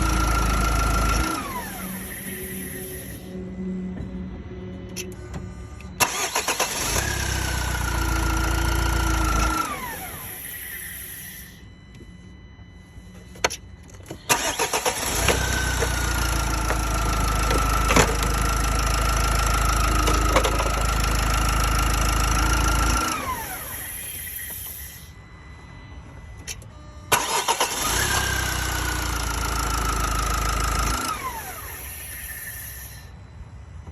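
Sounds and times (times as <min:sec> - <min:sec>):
diesel engine rumble: 0:00.0 - 0:11.6, 0:13.8 - 0:25.1
high engine whine: 0:00.0 - 0:33.9.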